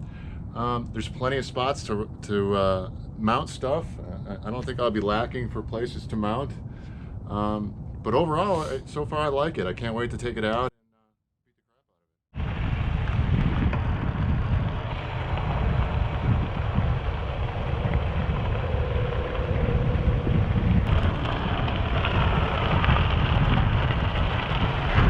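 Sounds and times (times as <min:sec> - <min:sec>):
wind rumbling on microphone: 0:00.0 - 0:10.7, 0:12.4 - 0:25.0
bicycle tyre noise: 0:12.4 - 0:25.0.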